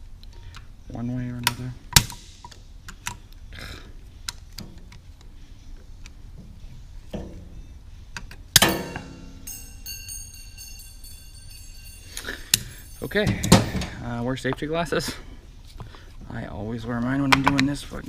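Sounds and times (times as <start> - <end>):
metal clank with ringing: 8.6 - 14.0.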